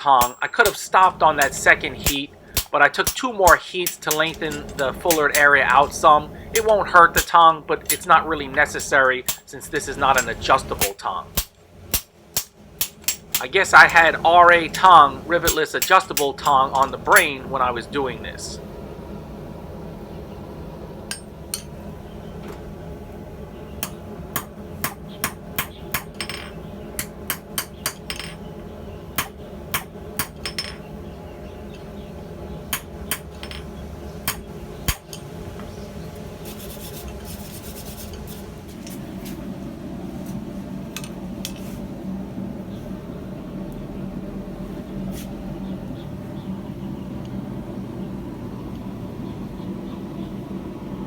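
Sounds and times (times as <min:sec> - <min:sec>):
hammer striking steel on anvil: 0:00.0 - 0:06.0, 0:06.6 - 0:14.1, 0:14.7 - 0:17.4, 0:21.1 - 0:21.8, 0:23.8 - 0:28.4, 0:29.2 - 0:30.8, 0:32.7 - 0:35.3
steady rumble: 0:00.0 - 0:51.0.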